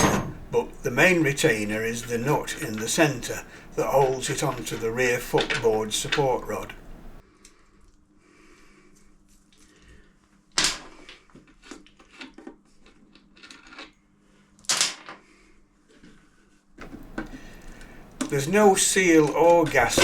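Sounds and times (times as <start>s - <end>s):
metal clanks: 0.0s - 0.9s.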